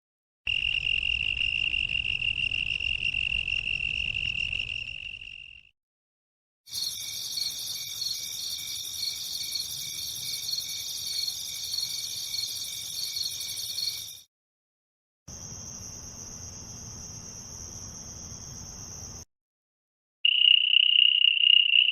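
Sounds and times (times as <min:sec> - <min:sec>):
insects trilling: 0:06.7 - 0:14.2, 0:20.2 - 0:21.9.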